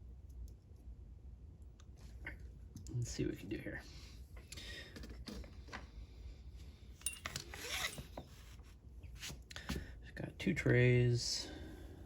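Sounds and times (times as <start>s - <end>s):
metal lock parts scraping: 7.0s - 8.2s.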